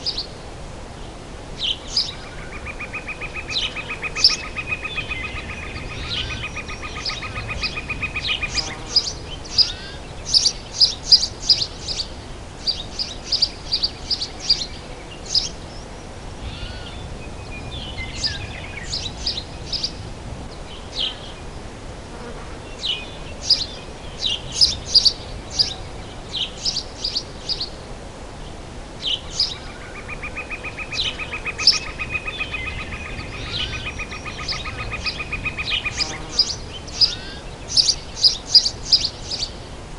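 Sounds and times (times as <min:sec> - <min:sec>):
birds chirping: 0:00.0 - 0:00.4, 0:01.0 - 0:21.7, 0:22.6 - 0:39.7
insect buzz: 0:05.6 - 0:15.6, 0:35.6 - 0:39.5.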